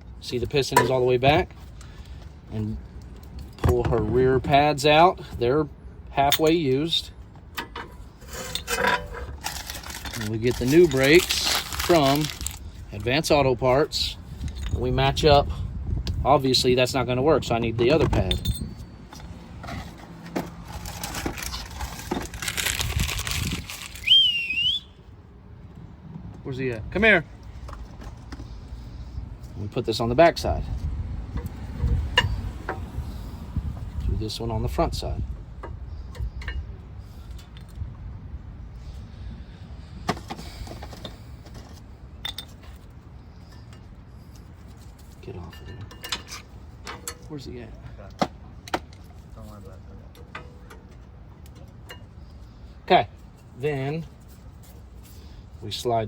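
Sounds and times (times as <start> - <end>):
packaging crinkling: 9.4 - 12.6, 20.7 - 24.1
high whistle-like tone: 24.0 - 25.1.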